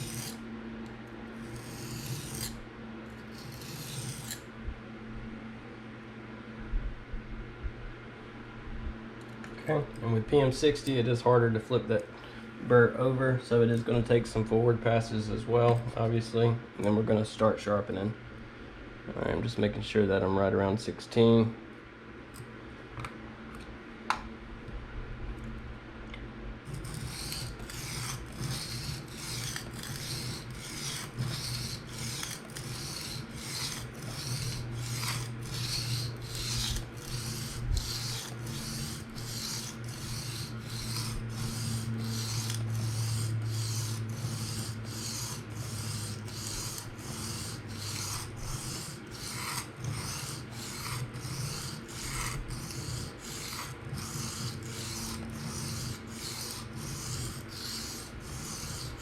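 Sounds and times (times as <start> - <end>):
knife rasping on sharpening plate: 0.0 - 0.4, 1.4 - 2.6, 3.3 - 4.4, 26.7 - 59.0.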